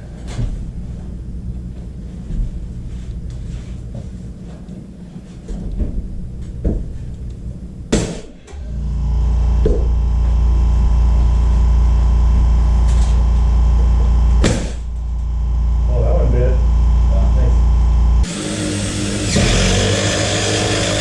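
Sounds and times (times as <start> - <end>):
low machine hum: 0.0 - 21.0
sharp knock: 14.4 - 14.8.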